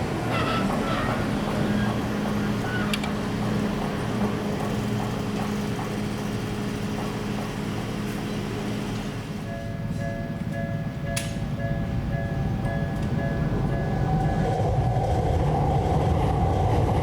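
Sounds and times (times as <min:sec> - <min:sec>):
electric train rumbling past: 0:00.0 - 0:17.0.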